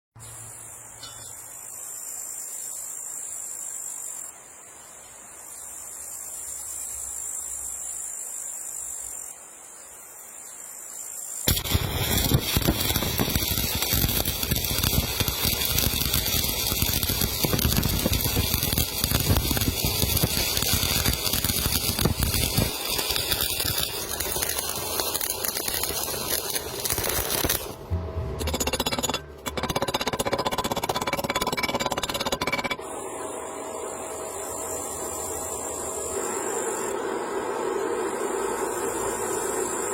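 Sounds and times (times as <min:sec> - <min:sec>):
faint high hiss: 0:00.2 - 0:28.4
welding arc crackling: 0:11.5 - 0:32.8.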